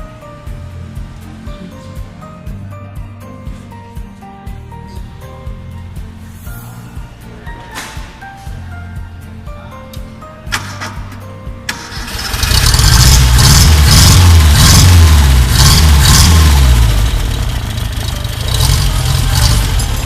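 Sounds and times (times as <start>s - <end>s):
engine revving and idling: 11.7s - 20.0s.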